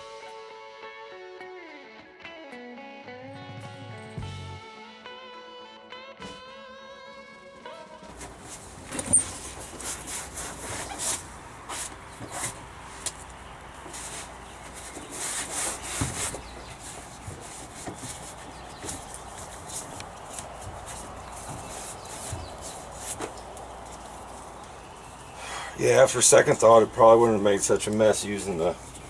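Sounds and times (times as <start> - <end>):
hand scraping on plastic: 8.1 - 29.0.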